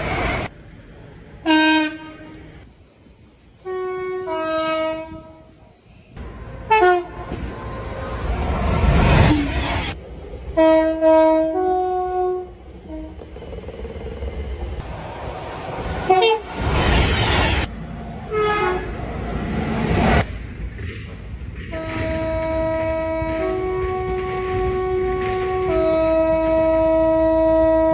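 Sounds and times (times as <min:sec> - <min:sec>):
trains passing: 0:00.0 - 0:27.9
train horn blasts: 0:01.4 - 0:02.4, 0:03.6 - 0:05.6, 0:06.6 - 0:07.8, 0:10.6 - 0:13.2, 0:16.1 - 0:16.6, 0:18.3 - 0:19.0, 0:21.7 - 0:27.9.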